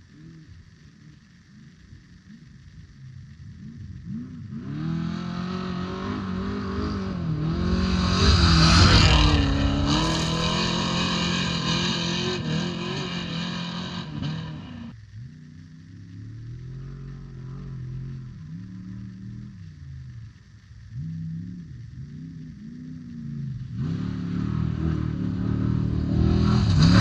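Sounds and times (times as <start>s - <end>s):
race vehicle engine at high revs: 3.6s - 27.0s
tyre and dirt noise: 4.1s - 14.9s.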